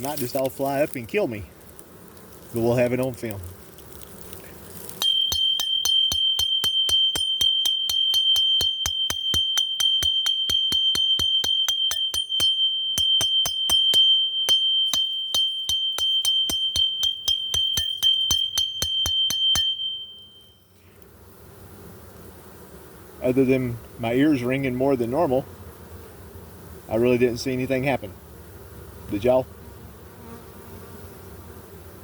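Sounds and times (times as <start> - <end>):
metal object beaten rapidly: 5.0 - 20.2.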